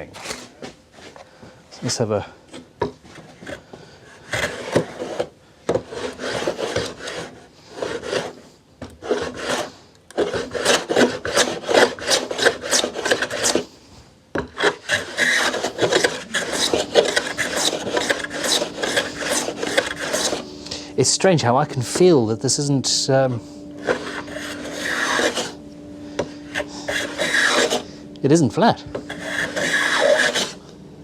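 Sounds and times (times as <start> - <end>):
hand plane shaving wood: 3.3 - 8.4, 9.0 - 13.7, 14.4 - 20.6, 23.8 - 25.6, 26.2 - 27.9, 28.9 - 30.6.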